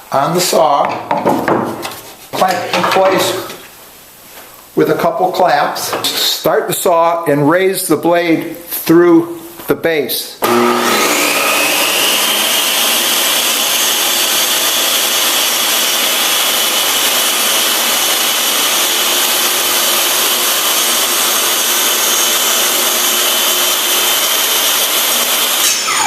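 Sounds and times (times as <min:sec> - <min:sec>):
table saw whining: 0:10.4 - 0:26.0.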